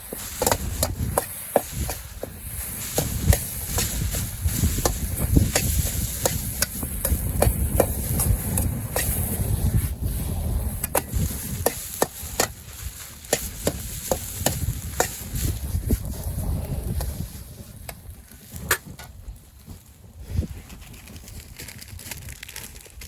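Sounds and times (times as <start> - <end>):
metal utensil scraping a wok: 0.0 - 17.9.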